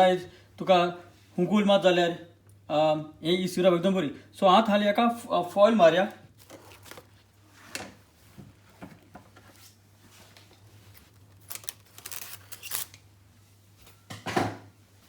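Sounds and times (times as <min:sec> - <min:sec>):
aluminium foil crinkling: 0:06.3 - 0:07.4, 0:10.2 - 0:13.0.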